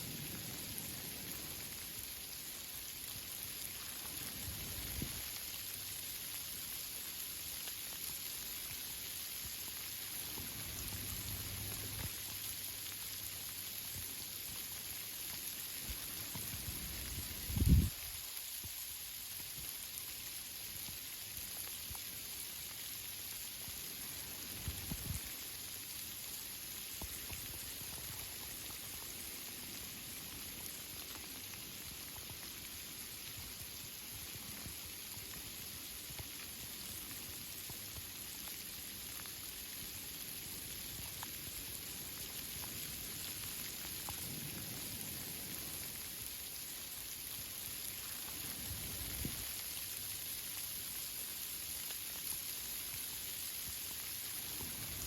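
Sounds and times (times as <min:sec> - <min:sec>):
rain falling on leaves: 0:00.0 - 0:55.0
faint drip ticks: 0:26.0 - 0:46.2.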